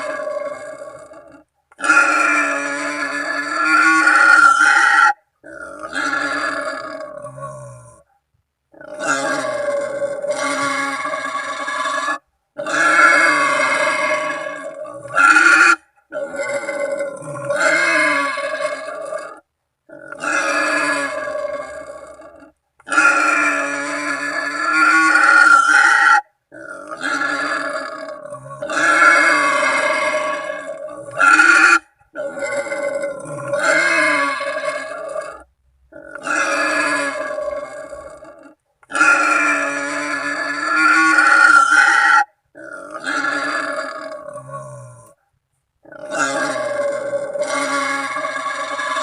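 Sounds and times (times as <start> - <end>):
wild boar calling: 0.0 - 8.1, 8.7 - 45.2, 45.8 - 49.0.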